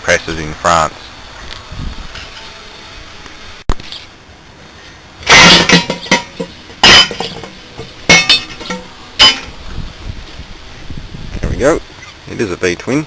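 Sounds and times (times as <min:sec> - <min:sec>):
loud metal blows on steel shell: 0:05.2 - 0:09.6.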